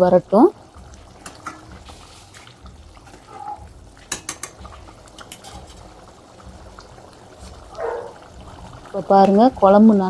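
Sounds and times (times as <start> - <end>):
curry boiling in a pan: 0.0 - 10.0
utensil clinking against pan: 3.4 - 5.8.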